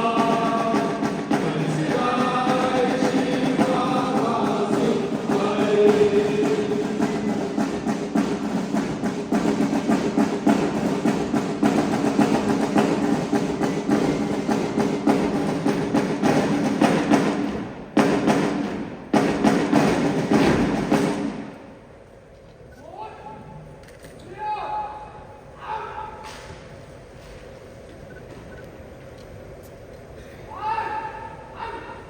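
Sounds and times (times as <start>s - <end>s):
instrumental music with percussion: 0.0s - 21.5s.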